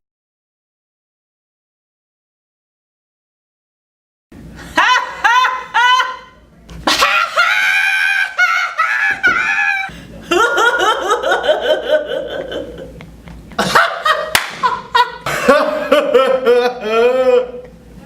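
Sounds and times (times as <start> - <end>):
person laughing loudly: 4.6 - 13.0, 13.6 - 17.7.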